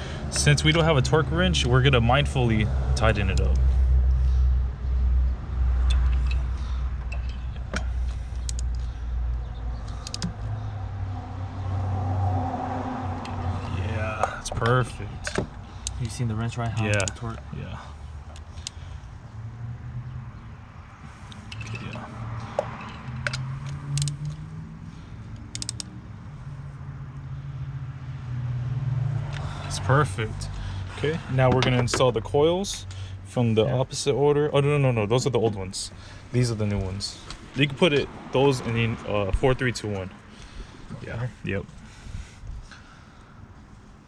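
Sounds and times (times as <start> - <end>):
metallic clicks of hand tools: 5.8 - 8.8, 9.9 - 10.4, 16.8 - 17.2, 22.6 - 24.4, 25.3 - 25.9
wrench ratchet clicking: 9.9 - 10.3, 22.8 - 24.4, 25.4 - 25.9.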